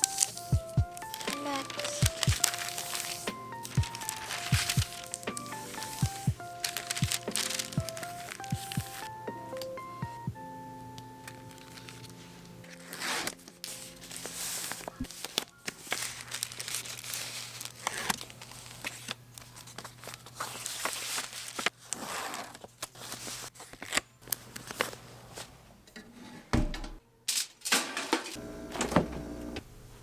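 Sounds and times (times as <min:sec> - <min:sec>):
packaging crinkling and rustling: 0:00.0 - 0:09.8, 0:11.2 - 0:25.6
soft background music: 0:00.0 - 0:21.0.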